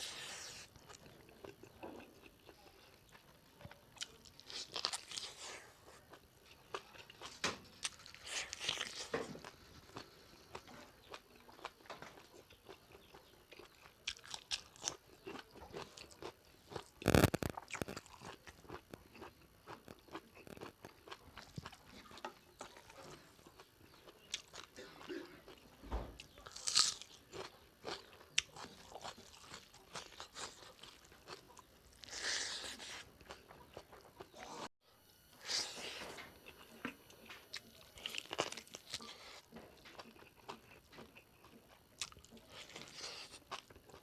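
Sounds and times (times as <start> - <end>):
chewing and biting food: 0.2 - 34.7, 35.4 - 44.0
short crunching clicks: 17.0 - 18.3.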